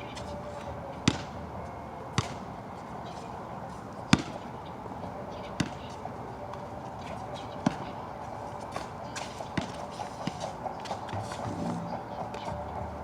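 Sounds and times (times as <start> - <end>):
basketball bouncing on wet court: 1.0 - 1.3, 4.1 - 4.3.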